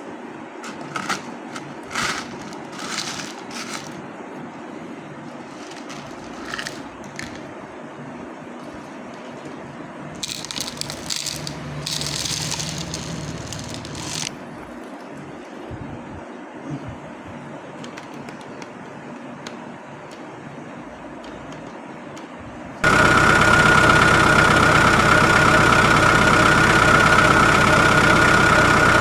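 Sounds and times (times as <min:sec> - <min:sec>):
low motor hum: 0:09.4 - 0:17.4, 0:22.4 - 0:29.0.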